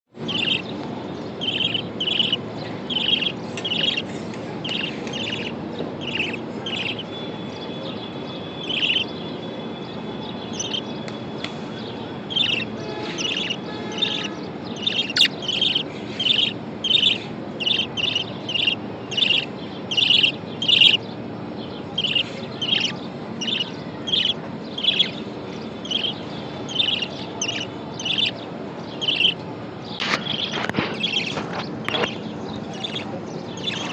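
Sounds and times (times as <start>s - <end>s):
low background hum: 0.1s - 33.9s
budgerigar chirping: 0.3s - 0.7s, 1.4s - 7.1s, 8.6s - 9.1s, 10.6s - 10.9s, 12.3s - 21.0s, 22.0s - 25.2s, 25.8s - 28.4s, 29.0s - 29.4s, 30.3s - 33.9s.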